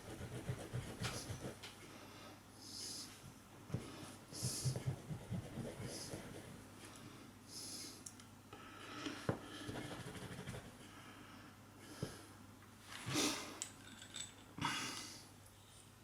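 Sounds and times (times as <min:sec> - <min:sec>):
scratchy rubbing: 0:00.0 - 0:01.6, 0:04.6 - 0:06.6, 0:09.6 - 0:10.8.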